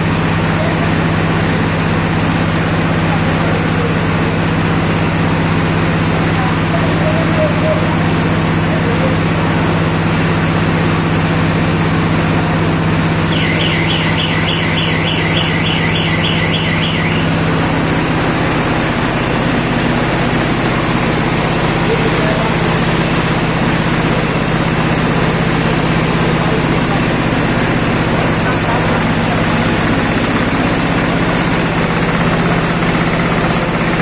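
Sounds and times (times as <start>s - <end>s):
diesel engine running: 0.0s - 34.0s
quick high chirps: 13.2s - 17.4s.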